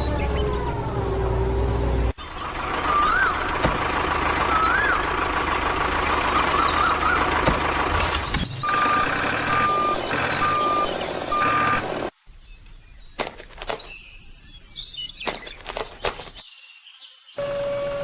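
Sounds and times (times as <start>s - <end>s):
truck engine: 0.0s - 12.1s, 17.4s - 18.0s
truck reversing alarm beeping: 2.5s - 12.1s.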